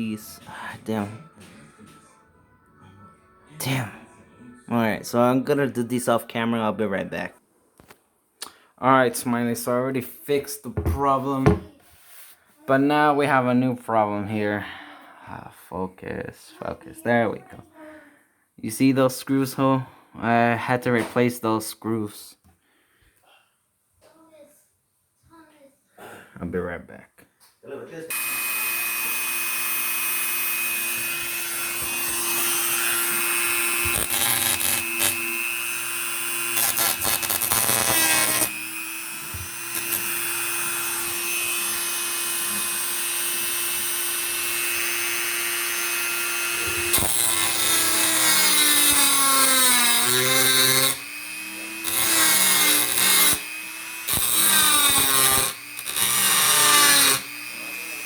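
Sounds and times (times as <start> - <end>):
electric power tool grinding: 28.1 - 58.0.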